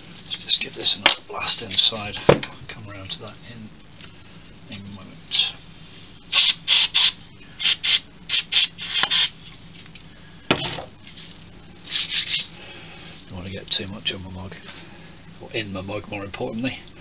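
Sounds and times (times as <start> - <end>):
aerosol spray hissing blasts: 6.3 - 9.4.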